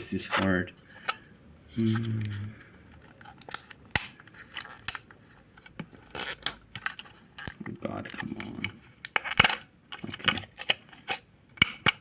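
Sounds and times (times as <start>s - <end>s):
person humming: 1.8s - 2.6s
plastic packaging clicks and snaps: 3.3s - 5.1s, 9.0s - 12.0s.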